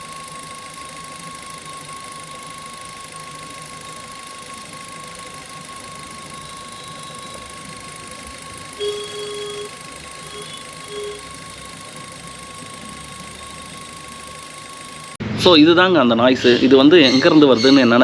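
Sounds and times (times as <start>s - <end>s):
car engine with high whine: 0.0s - 15.2s
short loud tone: 8.5s - 11.8s.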